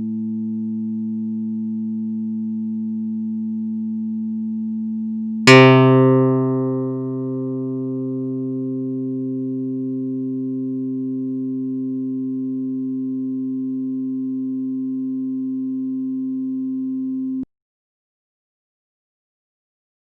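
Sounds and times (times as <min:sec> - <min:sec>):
synthesizer bass note: 0:05.5 - 0:11.0.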